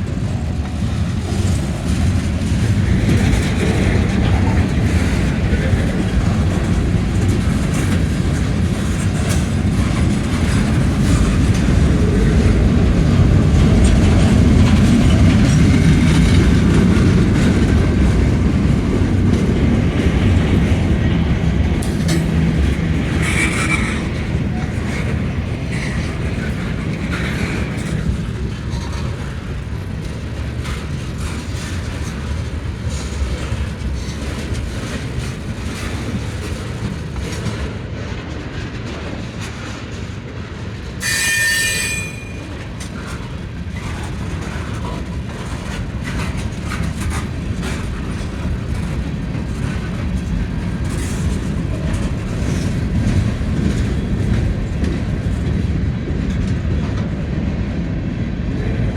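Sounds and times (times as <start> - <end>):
clickety-clack over rail joints: 0.0 - 58.9
train wheels rumbling on rails: 0.0 - 58.9
brief high squeaks: 41.0 - 42.4.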